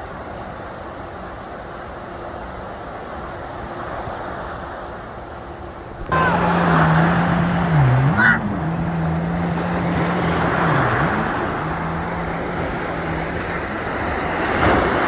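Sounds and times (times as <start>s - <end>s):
low hum: 6.0s - 15.0s
waves breaking: 6.0s - 15.0s.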